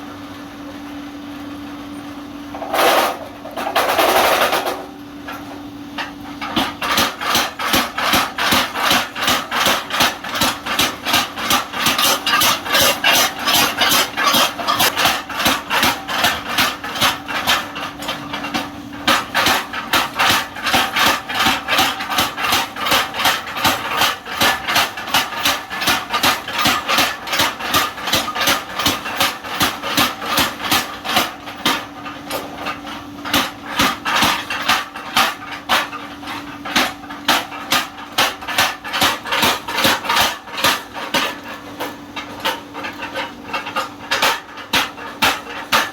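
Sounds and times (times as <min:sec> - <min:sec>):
power hammer striking metal: 0:06.5 - 0:17.6.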